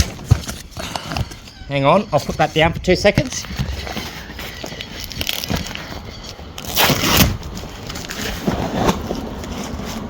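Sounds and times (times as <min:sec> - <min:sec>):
cardboard and paper crinkling: 0:00.0 - 0:10.0.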